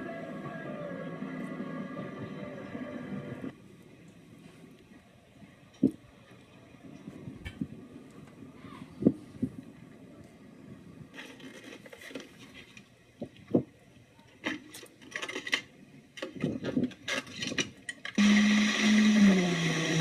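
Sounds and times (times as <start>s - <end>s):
loud motor hum: 18.2s - 20.0s.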